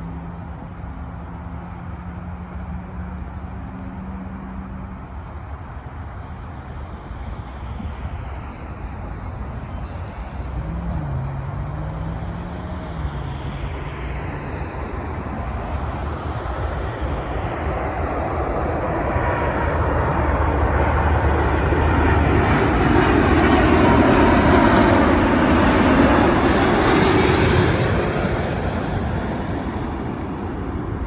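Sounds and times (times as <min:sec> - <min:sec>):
jet engines roaring: 0:00.0 - 0:31.0.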